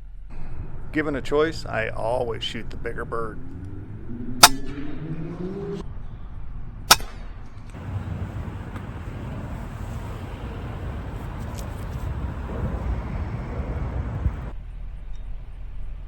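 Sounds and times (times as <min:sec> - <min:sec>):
air rifle sharp cracks: 0:04.4 - 0:04.8, 0:06.9 - 0:10.4.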